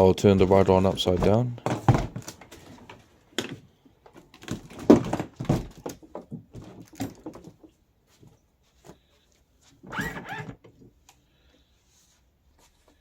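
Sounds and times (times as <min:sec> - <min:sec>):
plastic toy car knocks and thuds: 0:04.4 - 0:07.5.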